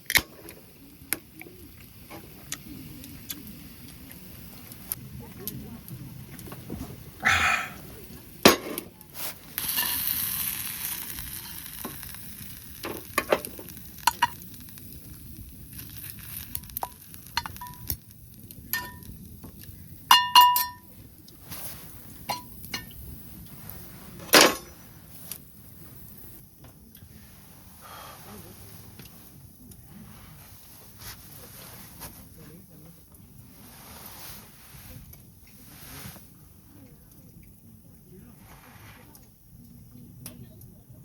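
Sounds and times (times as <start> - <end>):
cookware and utensils clinking: 8.4 - 9.0, 9.6 - 12.1, 18.7 - 19.1, 20.1 - 20.9, 22.2 - 23.0
hiss: 9.1 - 17.5, 21.4 - 26.4, 27.0 - 32.3, 33.4 - 36.4, 38.2 - 39.3.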